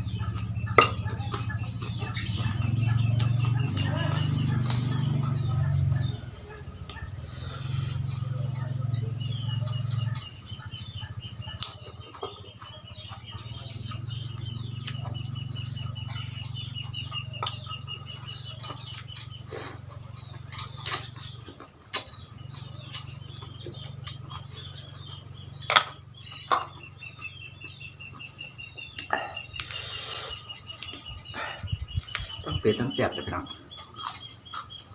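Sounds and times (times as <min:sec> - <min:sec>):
rapid high chirping: 0:00.0 - 0:21.5, 0:22.1 - 0:34.9
chewing with crunches: 0:00.0 - 0:32.4, 0:33.5 - 0:34.9.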